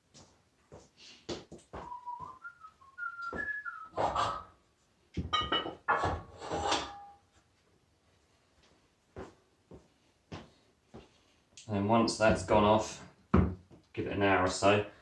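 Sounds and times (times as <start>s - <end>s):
man whistling a tune: 1.8s - 4.5s
objects knocking on wooden bench: 13.3s - 13.8s.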